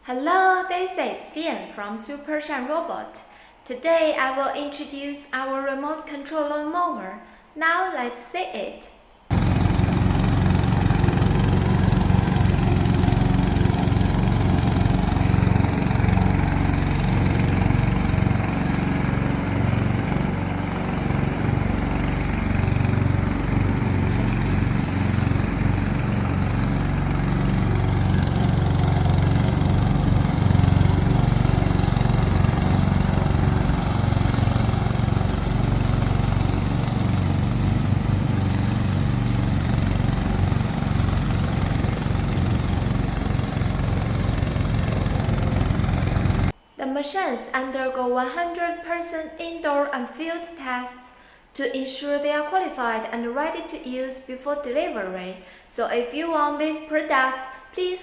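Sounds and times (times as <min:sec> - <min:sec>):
lawn mower engine running: 0:09.3 - 0:46.6.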